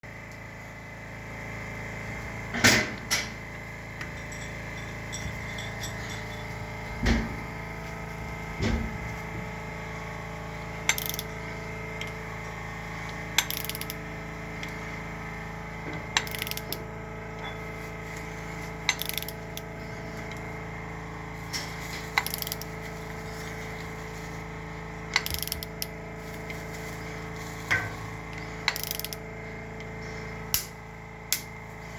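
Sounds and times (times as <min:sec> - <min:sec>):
steady hum: 0:00.1 - 0:31.9
metal tools clinking: 0:04.0 - 0:06.7, 0:10.9 - 0:11.3, 0:21.5 - 0:22.8, 0:25.2 - 0:26.6, 0:28.7 - 0:29.2.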